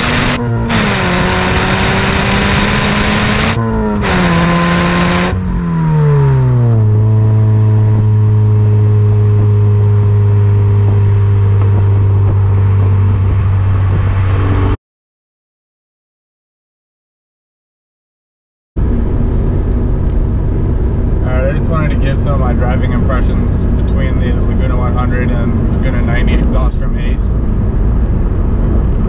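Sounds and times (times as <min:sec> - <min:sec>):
car engine revving through gears: 0:00.0 - 0:14.8.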